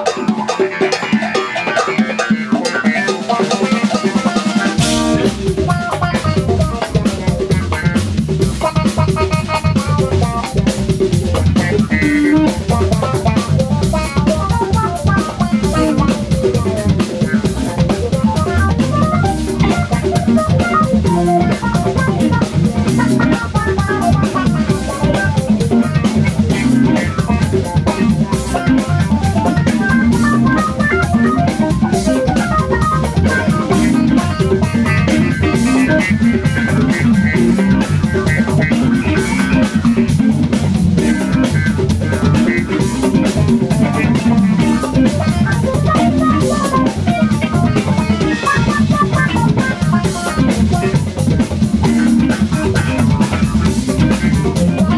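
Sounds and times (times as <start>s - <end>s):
bass guitar groove: 0.0s - 54.9s
drum kit: 0.0s - 54.9s
electric guitar quick lines: 0.0s - 54.9s.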